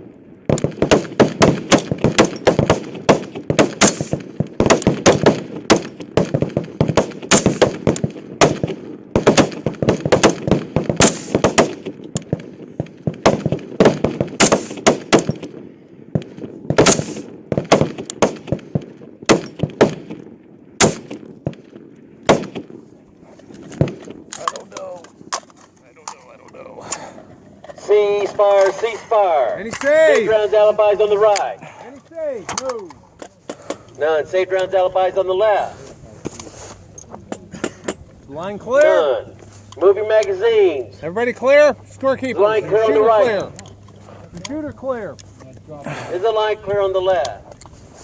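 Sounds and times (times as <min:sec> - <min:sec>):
rifle shots: 0:00.5 - 0:22.8.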